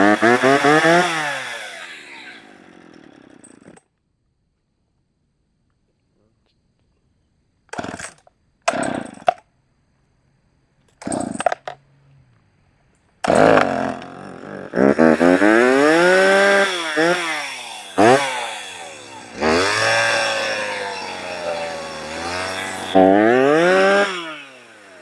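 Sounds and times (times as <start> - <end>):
chainsaw engine revving: 0.0 - 3.8, 7.8 - 9.4, 11.0 - 11.8, 13.2 - 25.0
chainsaw starter pull: 0.0 - 3.8, 7.7 - 9.4, 10.9 - 11.8, 13.2 - 25.0.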